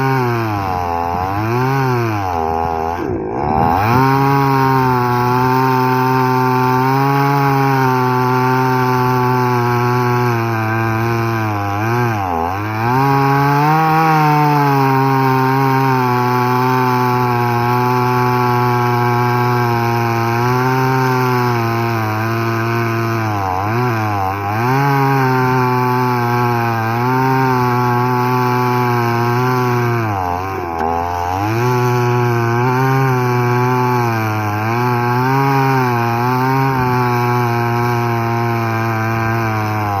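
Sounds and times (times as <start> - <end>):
chainsaw cutting wood: 0.0 - 40.0.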